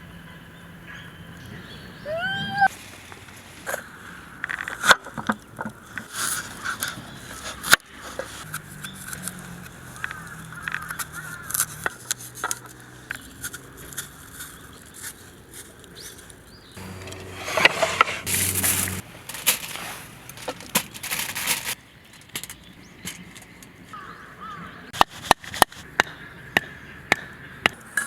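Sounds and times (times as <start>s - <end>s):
bird chirping: 0.0s - 2.7s
scraping from cooking: 16.8s - 21.8s.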